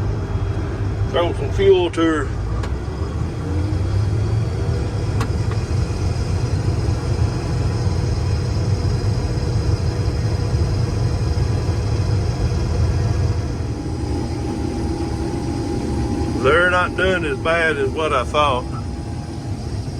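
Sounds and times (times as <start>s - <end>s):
diesel engine running: 0.0s - 19.9s.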